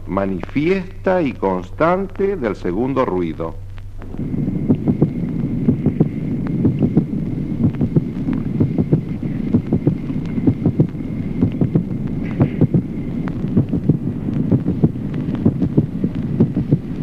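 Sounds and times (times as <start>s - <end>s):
steady low hiss: 0.0s - 17.0s
heartbeat: 3.6s - 17.0s.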